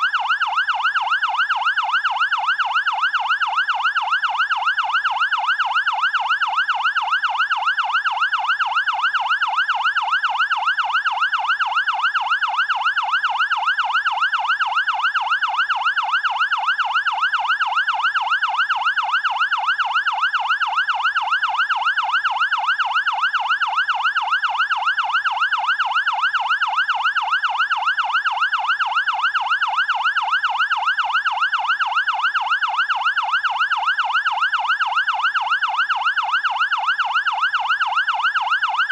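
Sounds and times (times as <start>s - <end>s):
siren yelping: 0.0s - 38.9s.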